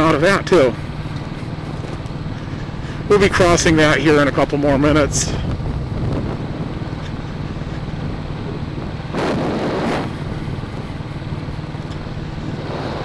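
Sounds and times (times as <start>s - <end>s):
motorcycle engine thumping: 0.8s - 2.5s
wind noise on microphone: 4.9s - 13.0s.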